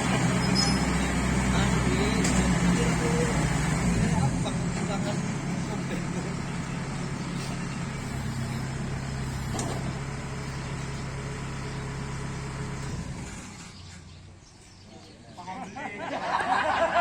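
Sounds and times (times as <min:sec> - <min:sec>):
combine harvester engine running: 0:00.0 - 0:14.2.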